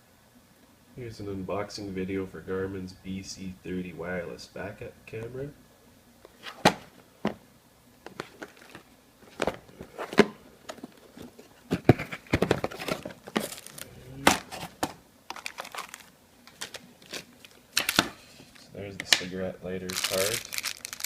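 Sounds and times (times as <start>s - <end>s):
plastic and cardboard crinkling: 8.0s - 21.0s.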